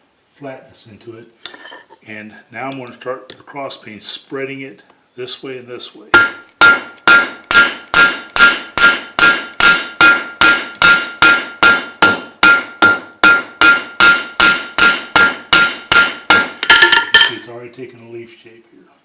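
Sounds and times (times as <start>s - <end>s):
hammer striking steel on anvil: 6.1s - 17.5s.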